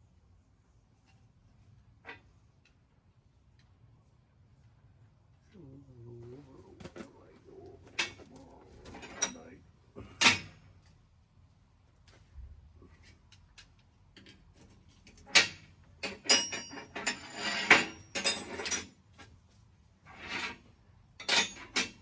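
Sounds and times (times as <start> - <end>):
metal hand tools clinking: 15.3 - 18.9, 21.2 - 22.0.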